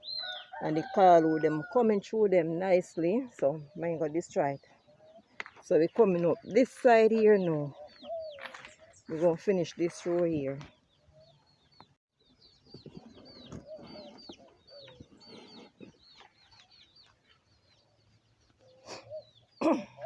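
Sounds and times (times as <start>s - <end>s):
chickens clucking: 12.6s - 17.8s.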